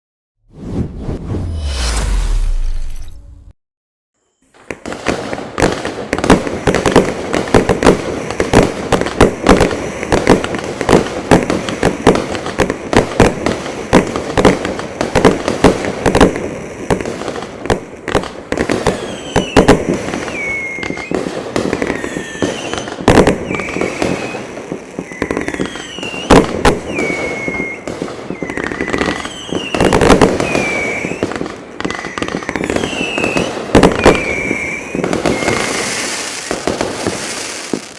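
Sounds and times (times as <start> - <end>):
fireworks launching and bursting: 0.5 - 3.6, 4.4 - 37.9
falling whistles: 20.2 - 21.2, 21.8 - 31.3, 31.9 - 36.5.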